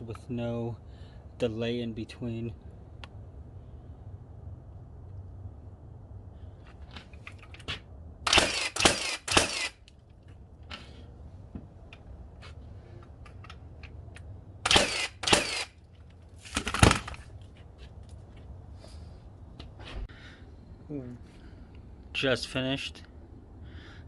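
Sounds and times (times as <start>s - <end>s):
nail gun firing into wood: 8.2s - 9.8s, 14.6s - 15.7s, 16.5s - 17.2s.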